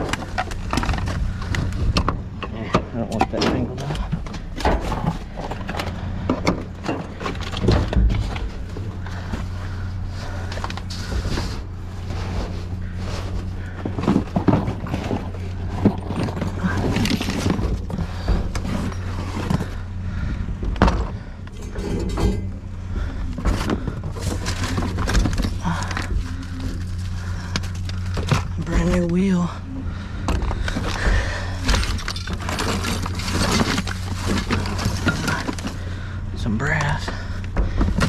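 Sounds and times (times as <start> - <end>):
tools clanking and thudding: 0.0 - 9.4, 13.2 - 19.8, 20.6 - 26.4, 30.2 - 35.8
steady low hum: 0.0 - 38.0.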